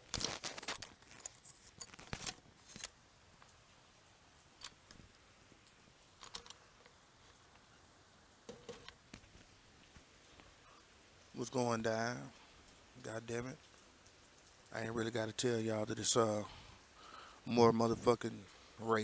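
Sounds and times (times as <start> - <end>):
faint sharp clicks and taps: 12.5 - 14.8.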